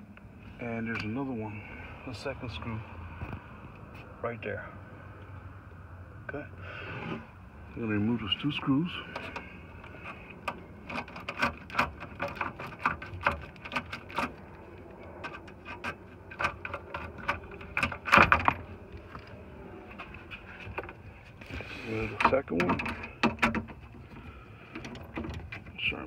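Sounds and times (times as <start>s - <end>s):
plastic rattling: 10.4s - 14.6s.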